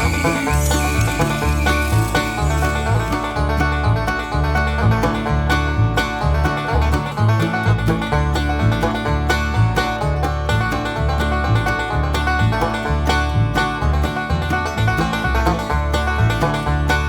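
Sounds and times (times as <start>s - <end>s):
banjo-led bluegrass music: 0.0s - 17.0s.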